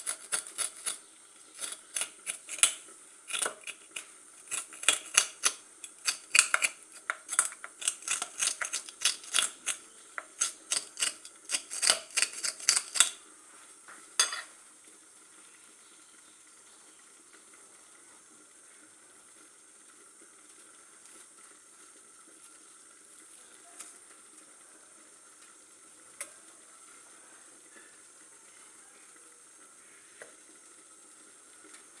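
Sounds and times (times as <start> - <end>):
metal fork scraping brush roll: 0.0 - 1.0, 1.6 - 13.2
faint hiss: 13.2 - 32.0.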